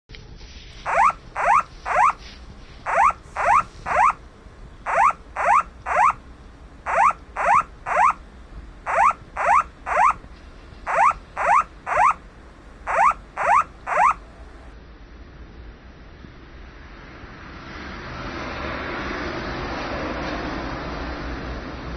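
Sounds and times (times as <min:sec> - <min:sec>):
alarm with rising tones: 0:00.8 - 0:02.2, 0:02.8 - 0:04.2, 0:04.8 - 0:06.2, 0:06.8 - 0:08.2, 0:08.8 - 0:10.2, 0:10.9 - 0:12.2, 0:12.8 - 0:14.2.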